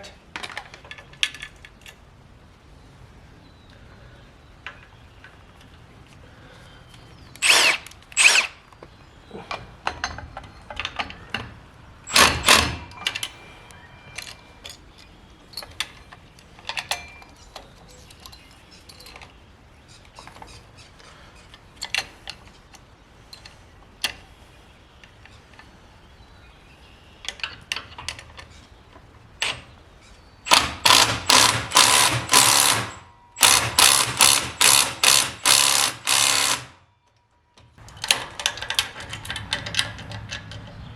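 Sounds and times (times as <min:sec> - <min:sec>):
impact wrench hammering: 0:30.5 - 0:36.7
tools clicking and knocking: 0:30.5 - 0:40.9.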